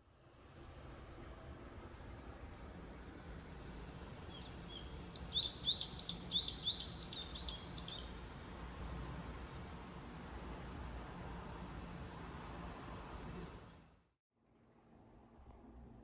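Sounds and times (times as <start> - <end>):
bird chirping: 4.8 - 8.1.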